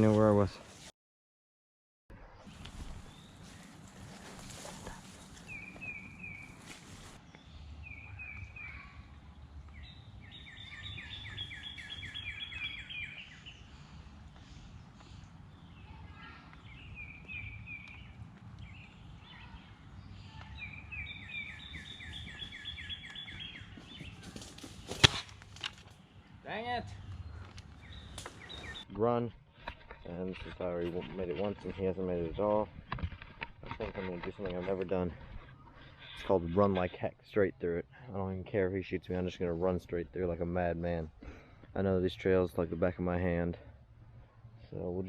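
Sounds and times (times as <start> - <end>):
songbird singing: 2.5 - 25.2, 25.8 - 29.1.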